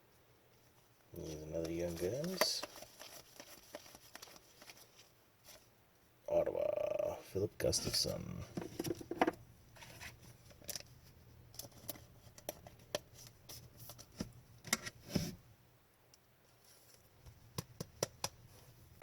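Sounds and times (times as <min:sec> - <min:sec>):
trading cards being flipped: 0:01.2 - 0:05.6.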